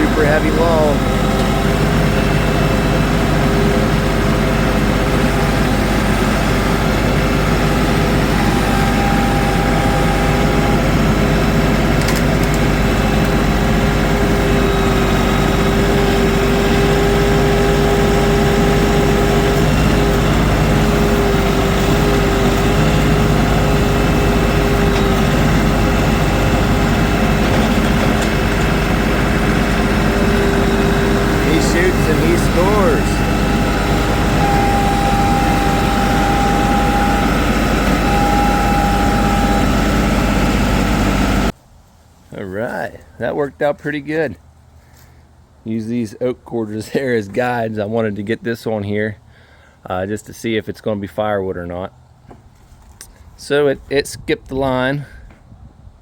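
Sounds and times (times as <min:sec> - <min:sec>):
thin whine: 0:00.0 - 0:41.6
tractor diesel engine running: 0:00.0 - 0:41.7.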